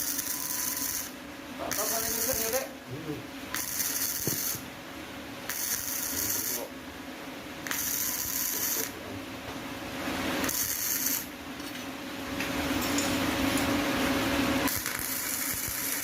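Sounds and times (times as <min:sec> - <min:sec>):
harsh hissing of steel: 0:05.5 - 0:06.7, 0:14.7 - 0:16.0.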